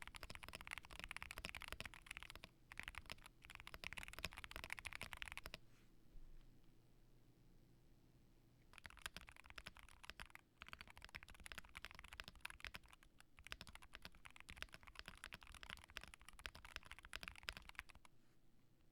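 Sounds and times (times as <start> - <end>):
mechanical keyboard typing: 0.0 - 5.6, 8.7 - 18.1.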